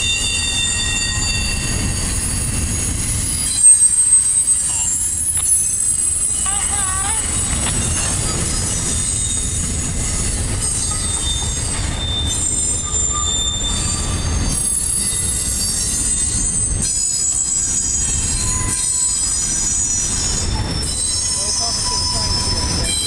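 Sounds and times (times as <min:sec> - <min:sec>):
freight train rumble: 0:00.0 - 0:23.0
high-pitched wheel squeal: 0:00.0 - 0:23.0.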